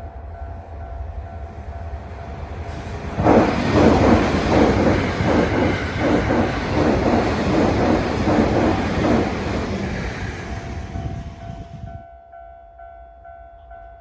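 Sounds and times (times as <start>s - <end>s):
electric train passing: 0.0s - 12.0s
wheels clattering over rail joints: 1.1s - 11.7s.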